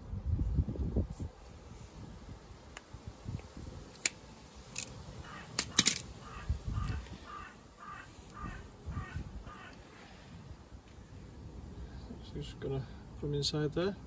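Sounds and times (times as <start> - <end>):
clicks of parts handled: 3.4 - 5.0, 5.6 - 6.1
bird calling: 5.2 - 10.2.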